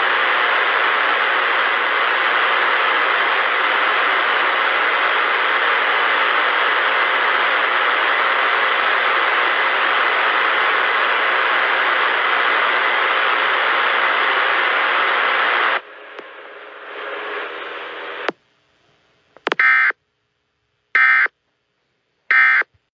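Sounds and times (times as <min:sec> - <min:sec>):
radio static hiss: 0:00.0 - 0:18.4, 0:19.3 - 0:20.0, 0:21.0 - 0:21.3, 0:22.3 - 0:22.7
data-tone bursts: 0:19.6 - 0:19.9, 0:21.0 - 0:21.3, 0:22.3 - 0:22.7.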